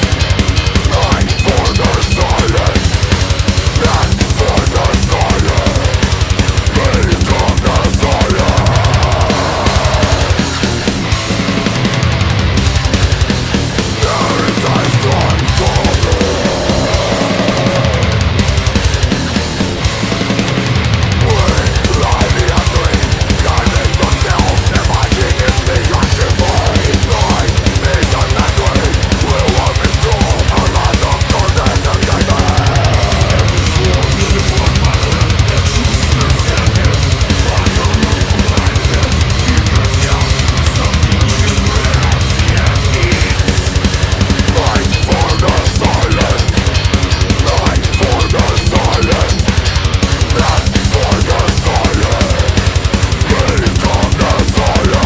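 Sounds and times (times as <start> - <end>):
fast kick drum beat: 0.0 - 55.0
heavy metal band playing: 0.0 - 55.0.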